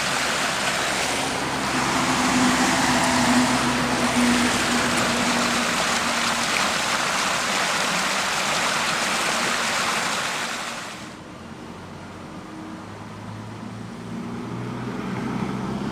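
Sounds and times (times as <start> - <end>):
heavy rain: 0.0 - 11.2.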